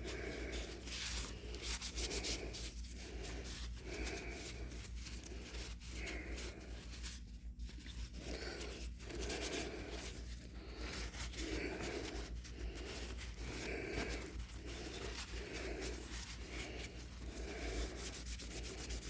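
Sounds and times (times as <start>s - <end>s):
rubbing strokes on wood: 10.9s - 19.0s.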